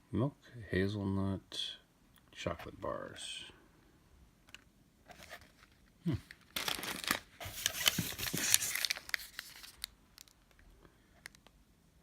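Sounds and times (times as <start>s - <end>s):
snack packaging crinkling: 5.1s - 11.5s.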